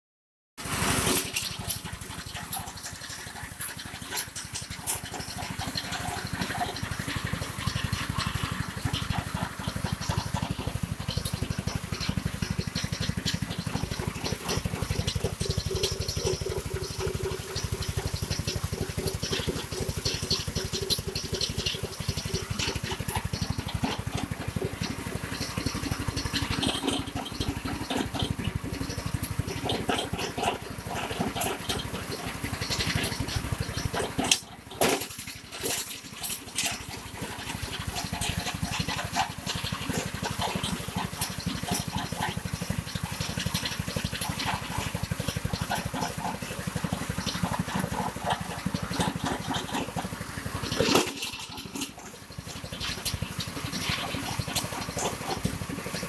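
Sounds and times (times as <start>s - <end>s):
chopping machine pulsing: 0.6s - 56.0s.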